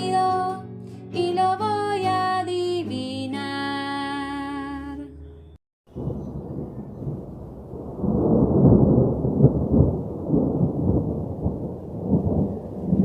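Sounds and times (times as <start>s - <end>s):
thunder rumbling: 5.9s - 13.0s.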